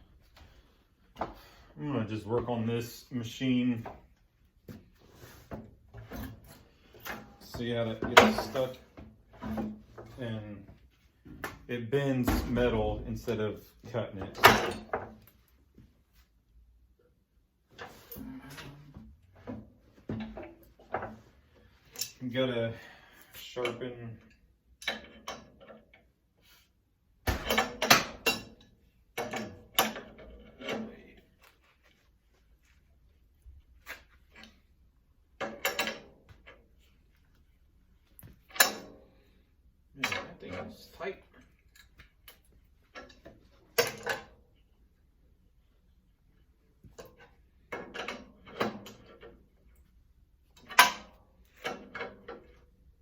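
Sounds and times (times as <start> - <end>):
metal tools clanking: 6.0 - 8.8, 21.9 - 22.3, 35.4 - 36.2.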